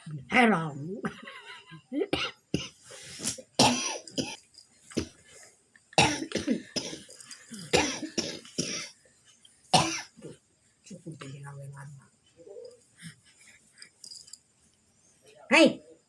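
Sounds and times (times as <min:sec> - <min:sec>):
elderly person coughing: 0:02.1 - 0:02.8, 0:03.6 - 0:04.4, 0:06.0 - 0:09.0, 0:09.8 - 0:10.4.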